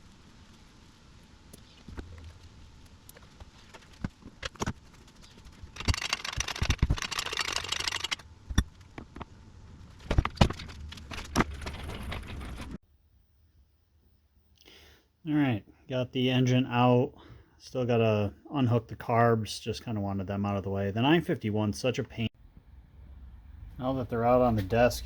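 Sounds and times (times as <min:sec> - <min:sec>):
rattling and scraping: 0:09.9 - 0:12.8.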